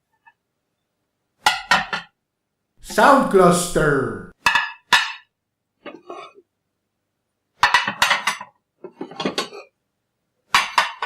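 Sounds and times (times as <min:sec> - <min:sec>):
dishes clattering: 0:01.5 - 0:02.1, 0:07.6 - 0:09.8, 0:10.5 - 0:11.0.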